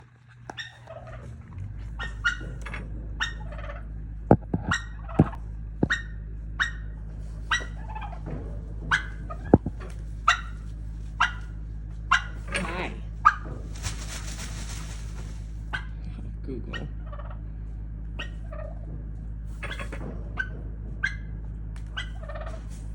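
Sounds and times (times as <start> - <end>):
steady low hum: 0.0 - 22.9
turkey yelping: 0.5 - 16.0, 16.7 - 17.5, 18.1 - 18.9, 19.6 - 22.9
sharp loud knocks: 4.3 - 6.0, 9.5 - 9.8.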